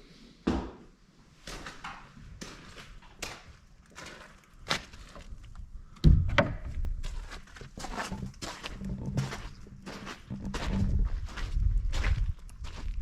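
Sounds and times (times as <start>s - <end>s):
heavy thump: 6.0s - 6.8s.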